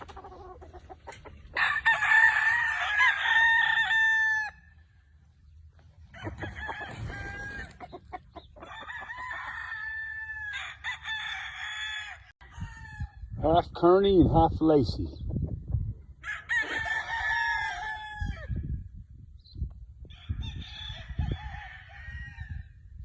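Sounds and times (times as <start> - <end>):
roosters crowing: 0.0 - 5.1, 6.0 - 13.2, 16.2 - 18.6, 20.1 - 22.8.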